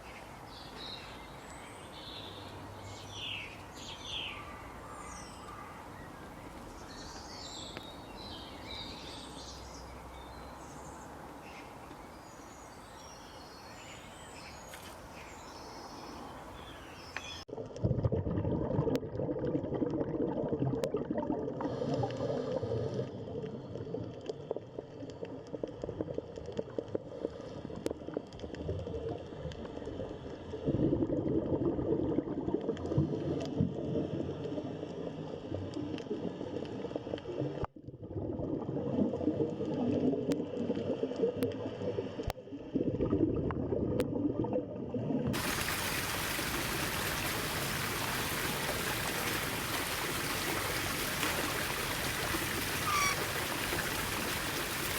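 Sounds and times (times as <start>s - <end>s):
water gurgling: 17.5s - 54.9s
rushing stream: 45.3s - 54.9s.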